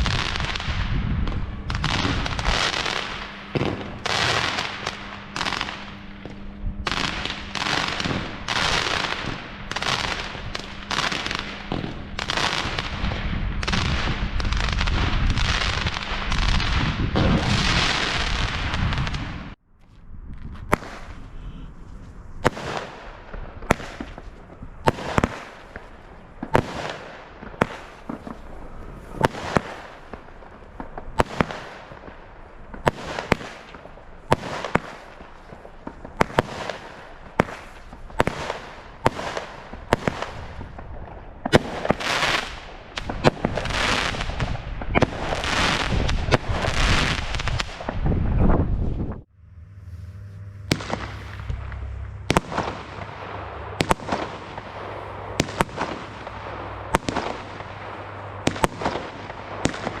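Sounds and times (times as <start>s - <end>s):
firework battery bangs: 0.0s - 19.5s, 24.8s - 40.8s, 49.3s - 60.0s
crackling firework bursts: 0.0s - 19.6s, 20.6s - 48.2s, 49.2s - 60.0s
low hum: 0.0s - 32.9s, 48.9s - 60.0s.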